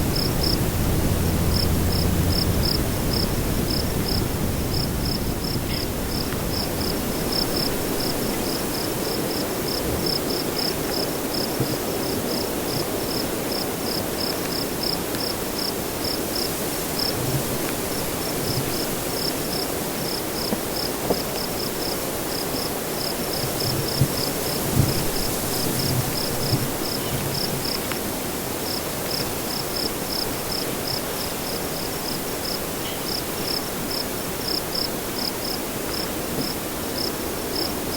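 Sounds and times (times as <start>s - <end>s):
low thumps: 0.0s - 7.5s
wind rushing: 0.0s - 8.6s
crickets chirping: 0.0s - 37.9s.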